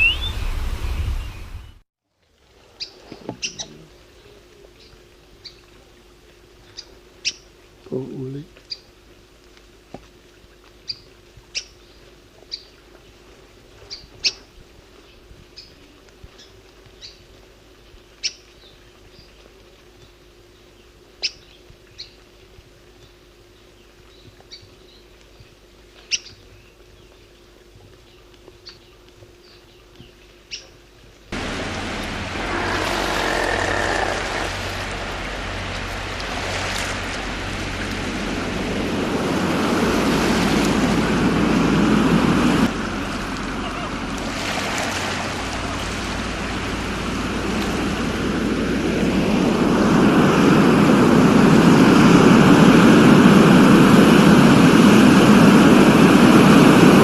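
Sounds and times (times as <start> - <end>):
bird chirping: 0.0 - 1.8
loud rushing noise: 0.0 - 1.8, 31.4 - 57.0
faint steady hum: 2.3 - 57.0.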